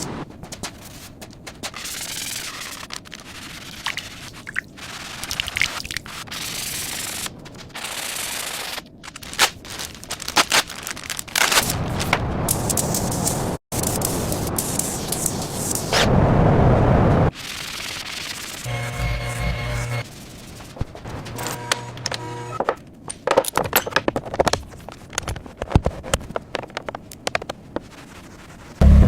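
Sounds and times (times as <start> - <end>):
scraping and sanding: 18.3 - 22.6.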